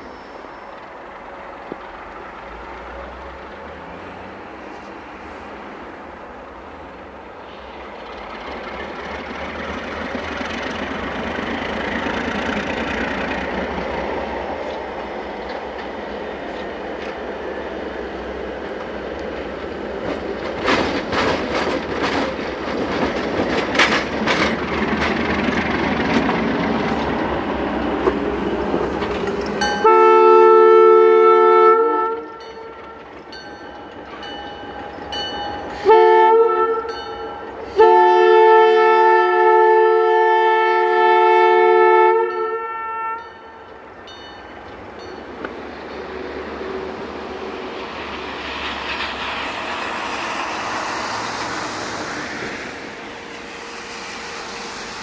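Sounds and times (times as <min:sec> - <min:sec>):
freight train rolling past: 0:00.0 - 0:55.0
locomotive air horn blasts: 0:29.8 - 0:33.1, 0:35.8 - 0:37.0, 0:37.7 - 0:43.7.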